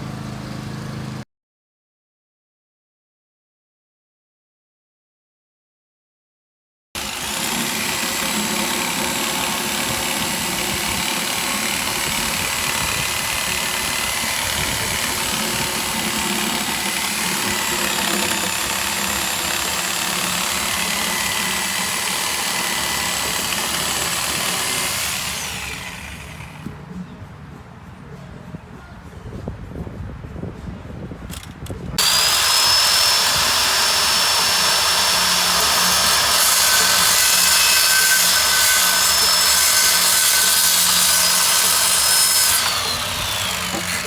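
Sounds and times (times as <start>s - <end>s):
motor running steadily: 7.0s - 27.2s.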